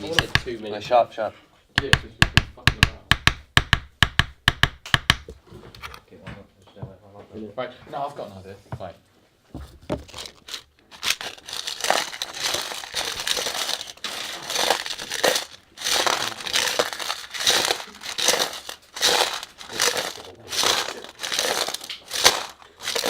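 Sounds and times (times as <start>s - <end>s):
props crinkling and crunching: 9.8s - 23.0s.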